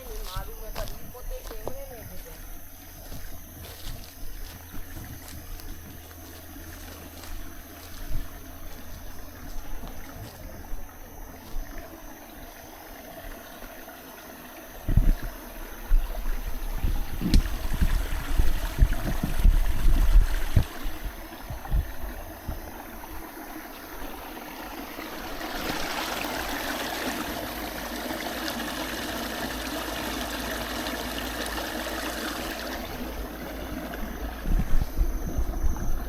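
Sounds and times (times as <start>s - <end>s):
water rushing over rocks: 14.3s - 35.2s.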